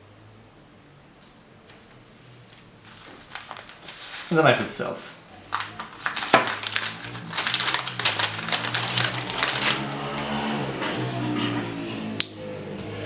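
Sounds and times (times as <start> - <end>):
quiet background music: 0.0 - 13.0
packaging crinkling: 1.7 - 10.4.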